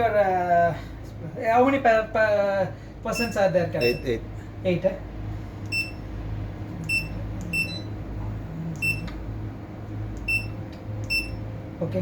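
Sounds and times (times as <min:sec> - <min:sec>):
steady low hum: 0:00.0 - 0:12.0
keypad beeps: 0:03.2 - 0:04.0, 0:05.7 - 0:06.0, 0:06.8 - 0:07.9, 0:08.8 - 0:09.1, 0:10.2 - 0:11.4.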